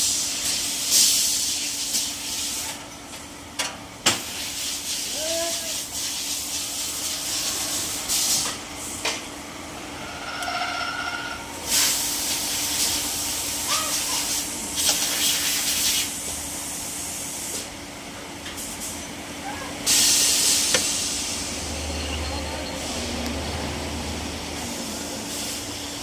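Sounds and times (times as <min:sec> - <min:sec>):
loud hissing surges: 0:19.8 - 0:26.0.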